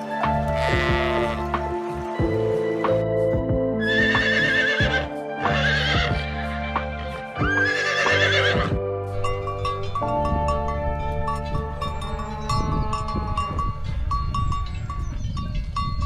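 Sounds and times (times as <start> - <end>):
background music: 0.0 - 14.5
farm animal quavering call: 0.5 - 1.5.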